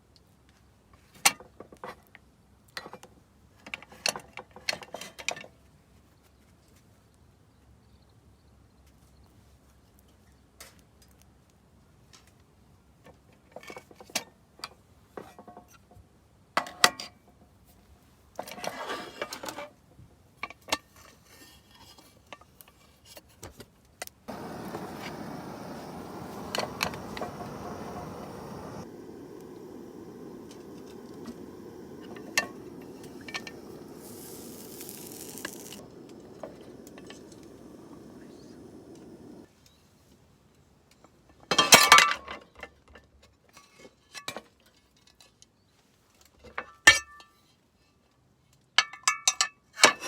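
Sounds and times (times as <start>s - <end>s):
steady hissing: 24.3s - 39.5s.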